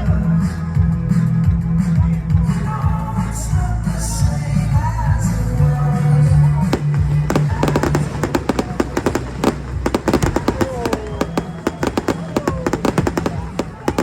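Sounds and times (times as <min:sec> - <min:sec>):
loud music with bass line: 0:00.0 - 0:14.0
fireworks popping and crackling: 0:06.6 - 0:14.0.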